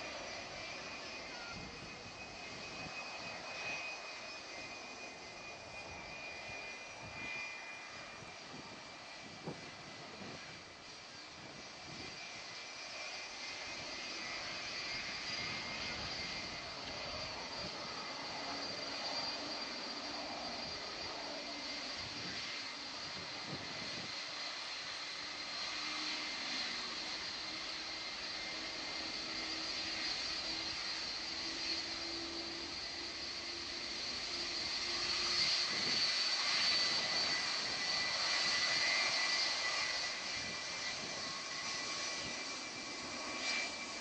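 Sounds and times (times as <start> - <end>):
jet engines whining: 0.0 - 44.0.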